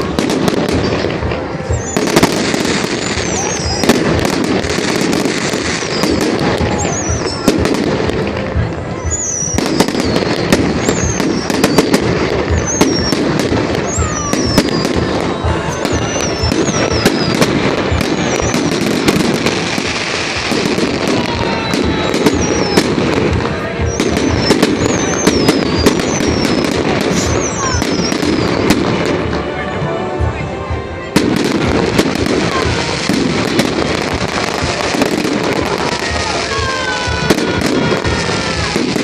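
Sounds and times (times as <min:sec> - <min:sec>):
fireworks bangs and crackles: 0:00.0 - 0:39.0
falling firework whistles: 0:01.6 - 0:07.7, 0:09.0 - 0:23.2, 0:23.8 - 0:28.8.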